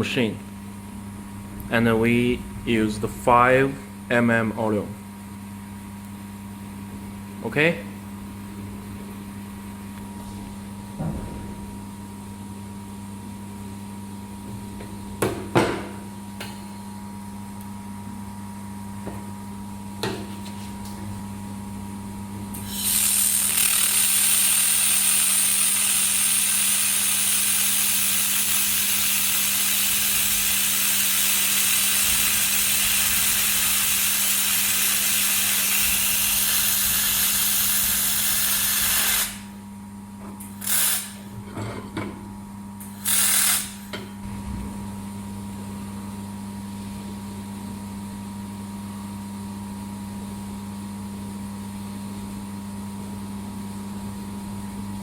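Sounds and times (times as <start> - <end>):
low machine hum: 0.0 - 24.3, 43.9 - 51.4
welder hissing crackle: 22.6 - 39.5, 40.6 - 41.3, 42.8 - 43.9.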